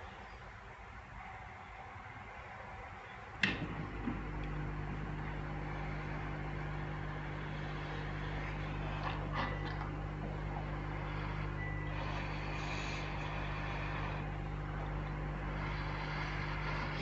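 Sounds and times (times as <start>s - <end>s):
low engine-like hum: 0.0s - 17.0s
clicks: 3.4s - 5.7s.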